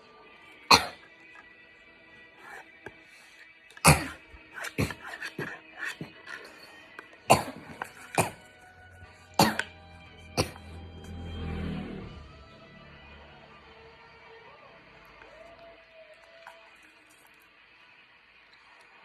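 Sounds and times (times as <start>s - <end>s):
background music: 0.0s - 19.0s
pet coughing: 0.7s - 1.2s, 2.2s - 3.1s, 3.7s - 10.8s.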